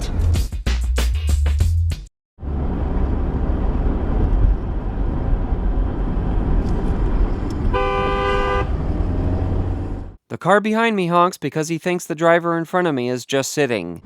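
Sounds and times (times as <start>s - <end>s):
road and engine rumble: 2.4s - 10.2s
car horn honk: 7.7s - 8.9s.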